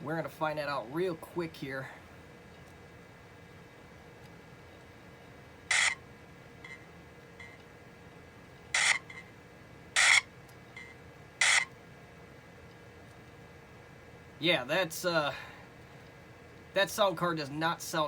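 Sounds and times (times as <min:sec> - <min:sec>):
harsh laptop speaker test sounds: 0:05.7 - 0:07.6, 0:08.7 - 0:09.4, 0:10.0 - 0:11.8.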